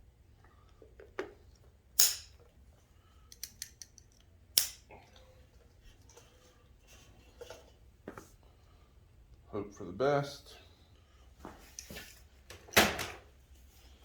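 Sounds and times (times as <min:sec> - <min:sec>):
loud sharp snaps: 0:04.6 - 0:04.8.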